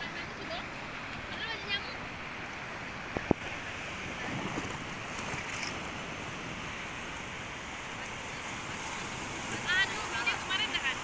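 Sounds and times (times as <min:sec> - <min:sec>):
sea waves washing on beach: 0:00.0 - 0:11.0
wind buffeting microphone: 0:03.0 - 0:06.8.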